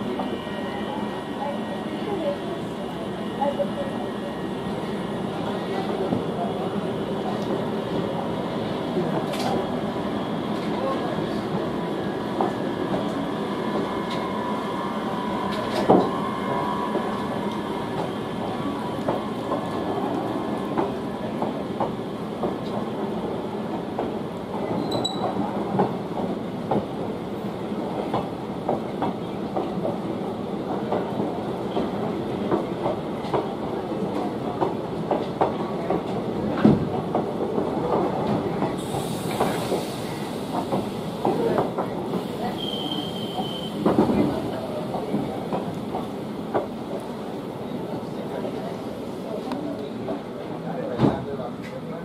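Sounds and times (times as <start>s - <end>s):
train wheels clattering over track: 15.4s - 47.3s.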